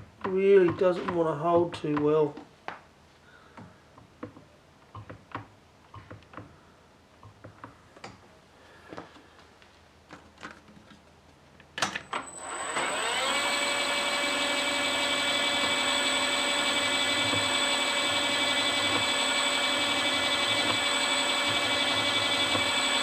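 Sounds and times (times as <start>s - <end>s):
milling machine motor whining: 12.2s - 23.0s.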